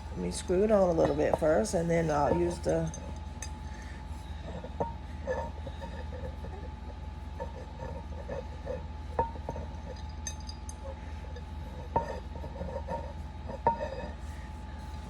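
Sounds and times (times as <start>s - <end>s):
steady low hum: 0.0s - 15.0s
metallic clinks of screw turning: 9.9s - 10.8s.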